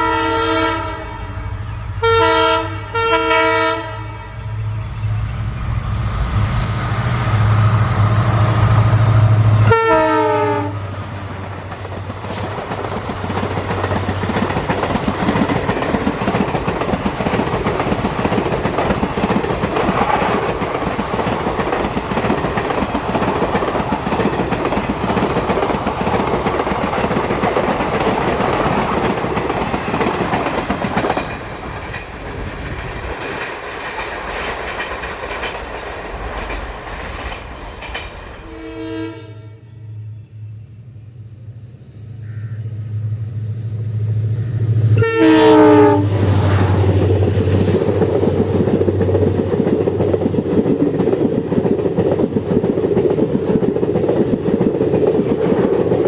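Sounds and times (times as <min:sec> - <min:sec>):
train horn: 0:00.0 - 0:04.8, 0:08.9 - 0:11.3, 0:38.3 - 0:40.7, 0:44.9 - 0:47.5
diesel locomotive engine passing: 0:00.0 - 0:56.0
train wheels clickety-clack: 0:05.4 - 0:38.4, 0:44.8 - 0:56.0.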